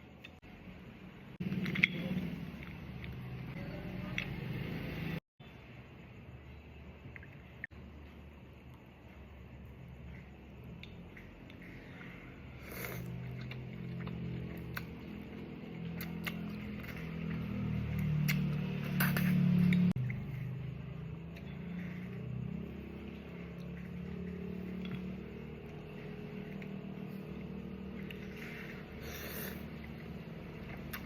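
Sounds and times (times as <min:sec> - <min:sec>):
low steady hum: 0:00.0 - 0:31.0
chewing and mouth clicks: 0:12.6 - 0:20.4, 0:22.5 - 0:31.0
noodle slurp: 0:28.0 - 0:31.0.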